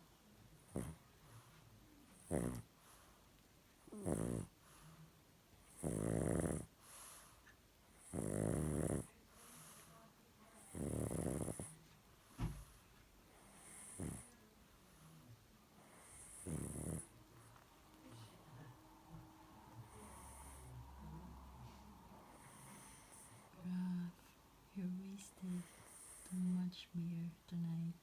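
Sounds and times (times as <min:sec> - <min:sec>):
dog snoring: 0:00.6 - 0:03.1, 0:03.8 - 0:04.8, 0:05.6 - 0:09.9, 0:10.6 - 0:11.8, 0:12.5 - 0:15.2, 0:15.8 - 0:18.7, 0:19.6 - 0:23.6, 0:25.5 - 0:26.6.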